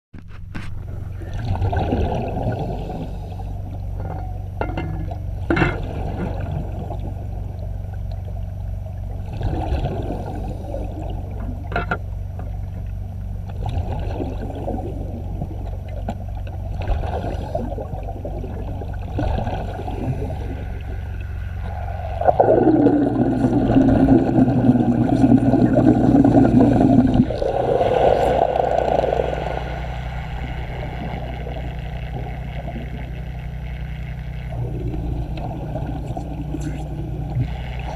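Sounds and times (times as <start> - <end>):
steady low hum: 0.2 - 37.9
underwater gurgling and bubbling: 0.3 - 37.9.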